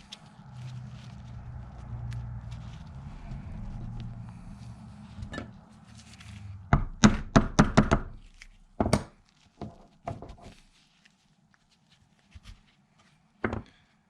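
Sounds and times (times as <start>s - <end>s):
low steady hum: 0.0s - 9.0s
sharp metal knocks: 6.7s - 8.2s.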